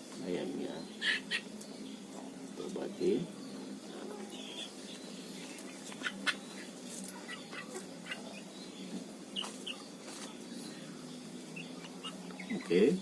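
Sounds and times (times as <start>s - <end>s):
steady low hum: 0.0s - 13.0s
chickens making short calls: 1.0s - 1.6s, 3.8s - 8.5s.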